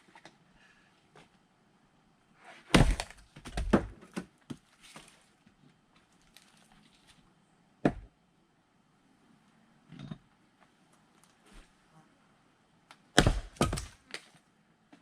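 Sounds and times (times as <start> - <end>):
axe striking wood: 2.7 - 4.3, 7.8 - 8.1, 13.2 - 14.0.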